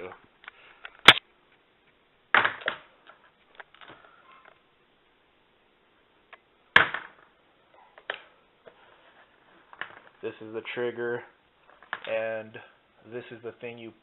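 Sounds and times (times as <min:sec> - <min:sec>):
loud sharp snap: 0:01.0 - 0:01.3.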